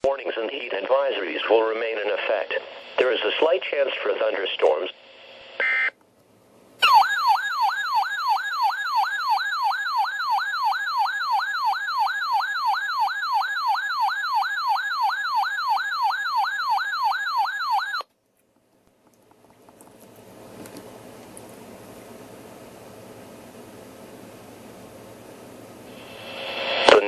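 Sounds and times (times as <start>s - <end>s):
radio hiss: 0.0s - 6.0s, 25.8s - 27.0s
warbling electronic siren alarm: 6.8s - 18.0s.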